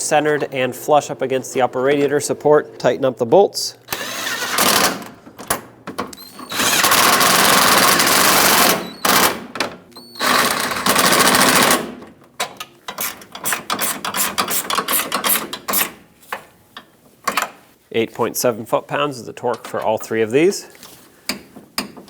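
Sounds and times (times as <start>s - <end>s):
power tool driving bolts: 3.9s - 16.0s.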